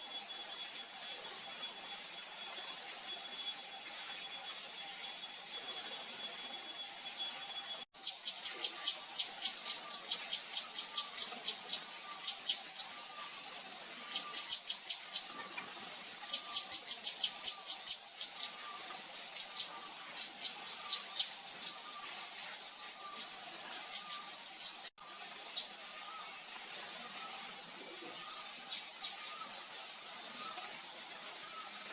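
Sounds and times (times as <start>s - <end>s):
bird calling in high chips: 28.1s - 29.6s.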